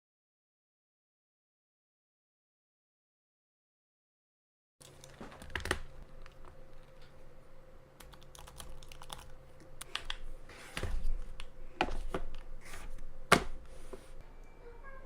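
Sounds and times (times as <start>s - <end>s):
laptop keyboard keys clicking: 8.0s - 10.2s.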